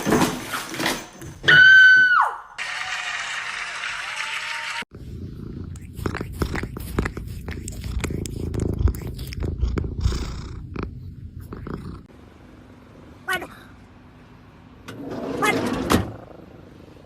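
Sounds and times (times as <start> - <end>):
cat purring: 5.0 - 12.1.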